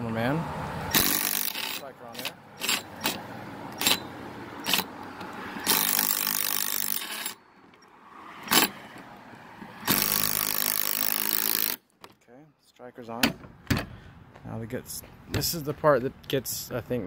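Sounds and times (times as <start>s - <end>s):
power drill driving bolts: 0.9s - 7.8s, 8.4s - 9.1s, 9.8s - 11.8s
hardware clicking: 0.9s - 9.1s.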